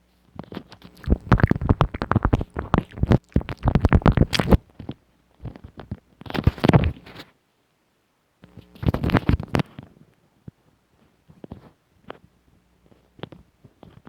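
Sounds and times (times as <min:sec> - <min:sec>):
wet mouth clicks and smacks: 0:00.9 - 0:04.6.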